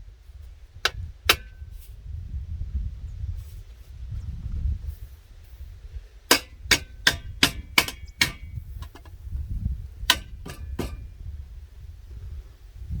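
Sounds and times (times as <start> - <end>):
hammer striking metal: 0.9 - 1.6, 6.3 - 9.1, 10.1 - 11.1.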